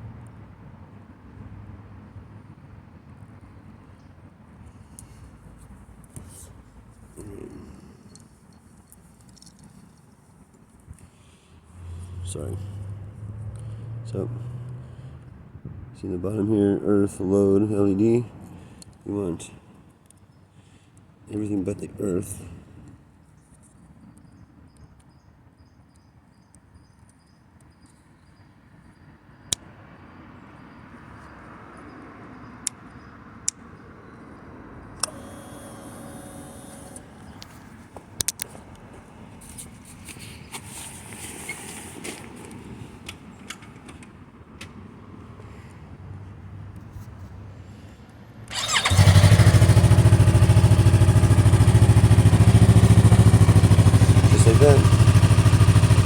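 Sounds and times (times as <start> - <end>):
electric starter whine: 35.0 - 37.4, 48.5 - 56.0
motorcycle engine idling: 48.5 - 56.0.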